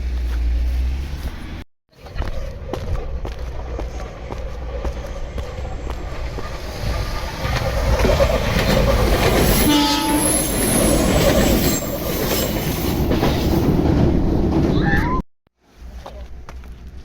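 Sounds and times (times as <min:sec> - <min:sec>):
electric train rumbling past: 0:03.5 - 0:16.0
train horn toot: 0:09.6 - 0:10.6.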